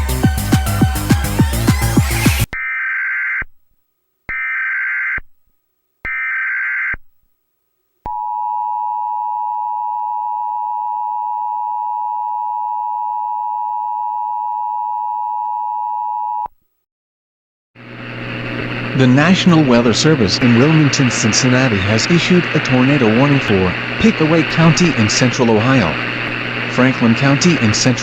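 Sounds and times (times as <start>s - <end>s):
screeching data bursts: 0.0s - 3.3s.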